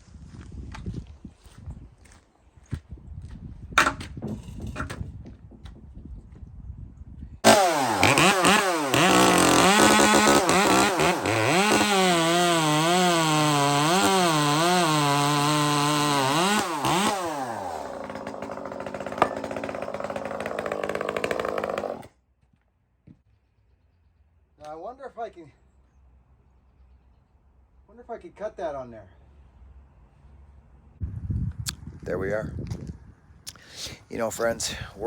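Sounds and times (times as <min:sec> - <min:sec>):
chainsaw engine revving: 0:07.4 - 0:22.1.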